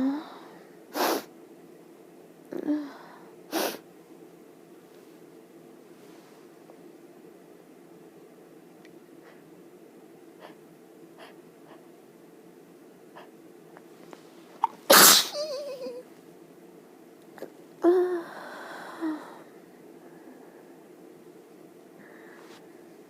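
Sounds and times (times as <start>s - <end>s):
person sneezing: 14.6s - 15.7s.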